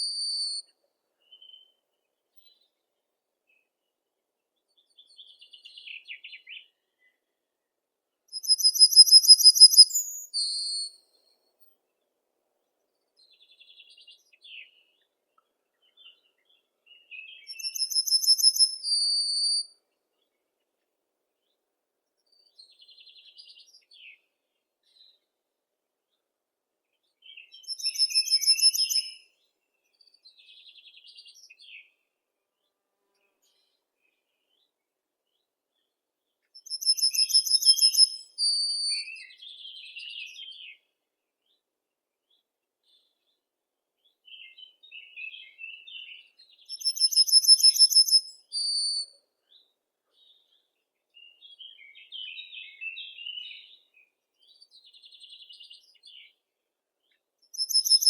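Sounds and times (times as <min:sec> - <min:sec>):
soft bird chirps and twitters: 0:00.0 - 0:04.0, 0:08.3 - 0:20.8, 0:21.4 - 0:25.4, 0:26.9 - 0:58.0
bird rapid trill: 0:08.4 - 0:10.3, 0:17.6 - 0:18.8, 0:27.7 - 0:29.2, 0:36.7 - 0:38.2, 0:46.8 - 0:48.3, 0:57.6 - 0:58.0.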